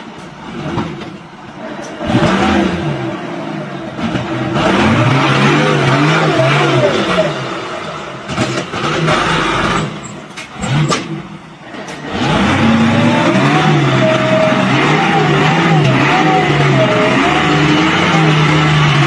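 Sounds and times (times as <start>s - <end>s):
engine running: 0.0s - 19.0s.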